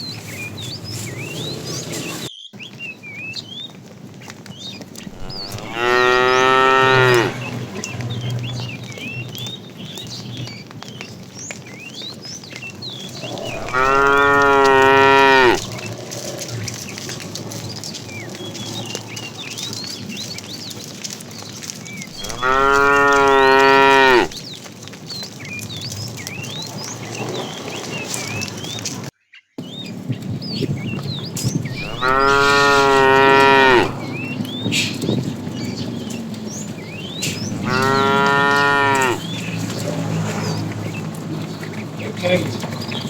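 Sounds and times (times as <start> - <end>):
cow mooing: 5.1 - 7.6, 13.2 - 15.8, 22.2 - 24.4, 31.7 - 34.3, 37.5 - 39.4.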